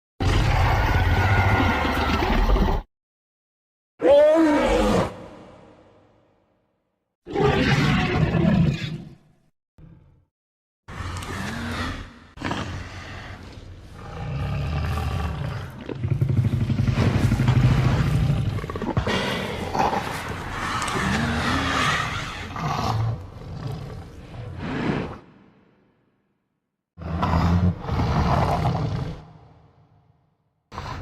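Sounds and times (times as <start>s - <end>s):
deep roars and rumbling growls: 10.9s - 25.3s, 27.0s - 29.8s.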